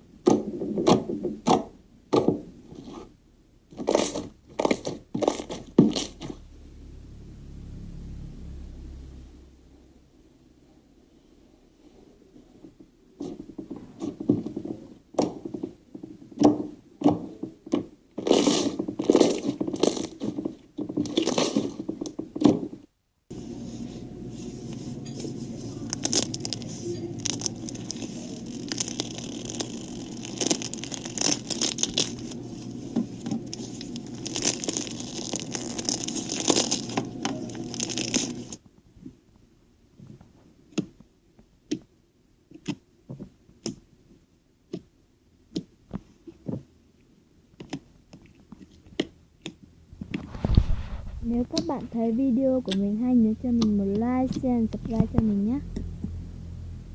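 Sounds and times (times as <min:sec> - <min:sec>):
slime crackling and squelching: 0:23.5 - 0:38.6.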